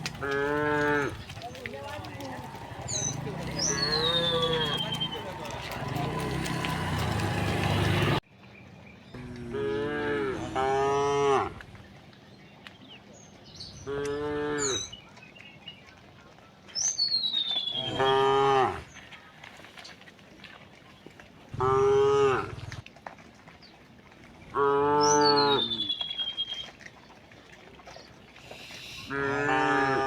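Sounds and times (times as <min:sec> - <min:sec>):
cows mooing: 0:00.0 - 0:08.2, 0:17.8 - 0:18.8, 0:21.6 - 0:22.8, 0:29.1 - 0:30.0.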